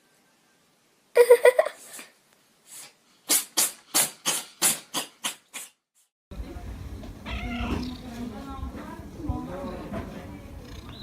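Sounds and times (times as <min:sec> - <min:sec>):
cat sneezing: 0:02.7 - 0:05.8.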